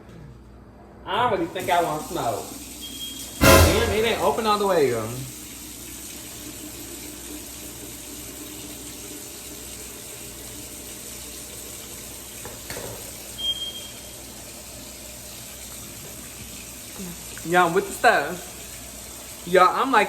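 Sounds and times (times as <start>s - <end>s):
faucet running into sink: 1.5s - 20.0s
short high beep: 3.4s - 4.3s.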